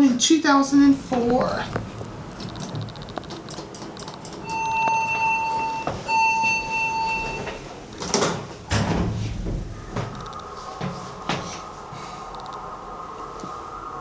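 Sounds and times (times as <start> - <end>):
low rumble: 0.7 - 5.7, 8.6 - 14.0
elevator beeps: 2.3 - 8.0, 10.0 - 10.6, 12.3 - 12.7.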